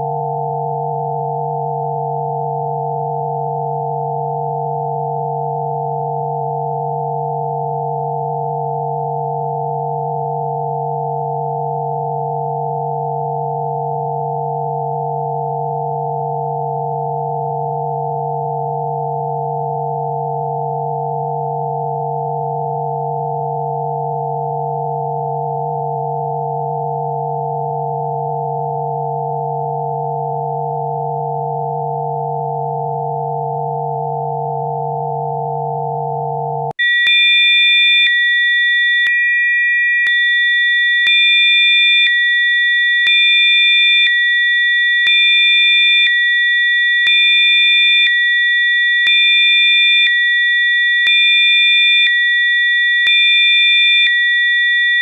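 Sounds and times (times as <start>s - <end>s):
steady pure sine tones: 0.0s - 19.2s.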